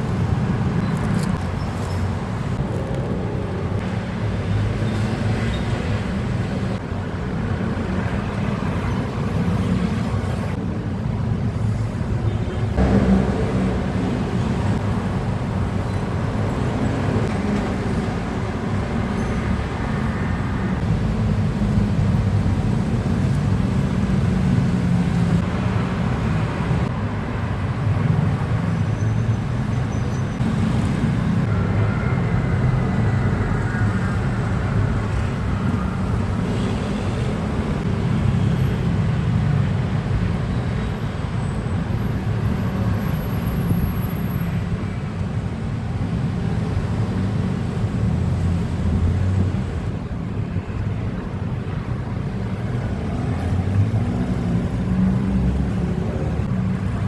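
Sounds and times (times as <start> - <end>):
low rumble of road traffic: 0.0 - 57.0
faint passing vehicles: 11.6 - 28.8.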